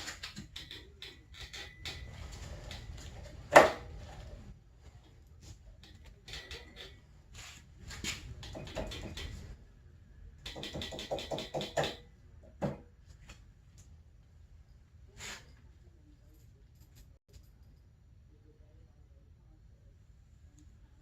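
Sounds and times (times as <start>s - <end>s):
ratchet clicks: 0.0s - 2.9s, 10.4s - 12.0s
hand tools clinking on metal: 0.0s - 3.4s, 5.8s - 7.2s.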